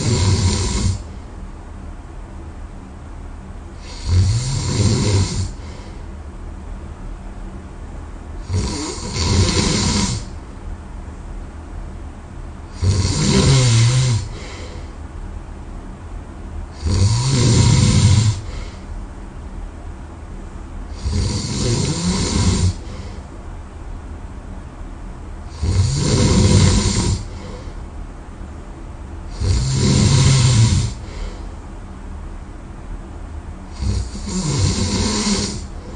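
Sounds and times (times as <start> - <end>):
person snoring: 0.0 - 1.1, 3.8 - 6.0, 8.4 - 10.4, 12.7 - 14.9, 16.8 - 18.8, 20.9 - 23.2, 25.5 - 27.8, 29.3 - 31.4, 33.7 - 35.9
quiet breathing: 3.7 - 6.2, 12.7 - 15.1, 16.7 - 19.1, 20.9 - 23.4, 25.4 - 28.0, 29.3 - 31.8, 33.6 - 35.9.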